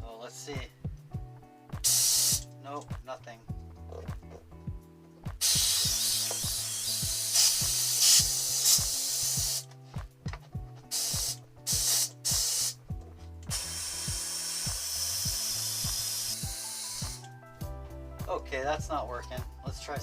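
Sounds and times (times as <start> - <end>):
background music with steady beat: 0.0 - 20.0
compressed air hissing: 1.8 - 2.5, 5.4 - 9.7, 10.8 - 17.4.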